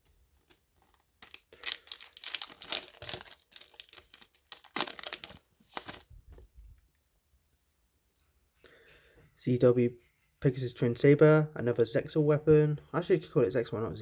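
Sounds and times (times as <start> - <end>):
foil wrapper crinkling and tearing: 0.5 - 6.4.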